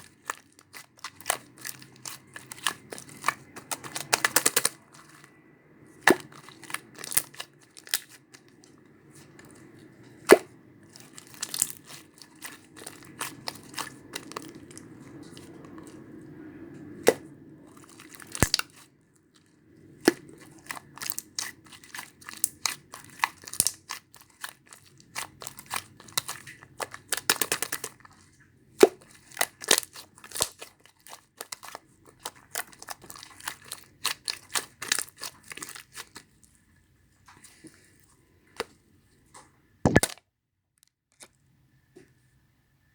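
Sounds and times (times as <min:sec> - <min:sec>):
slime crackling and popping: 0:00.0 - 0:05.2, 0:06.1 - 0:08.4, 0:10.3 - 0:14.6, 0:18.0 - 0:18.8, 0:20.6 - 0:27.9, 0:39.9 - 0:40.2.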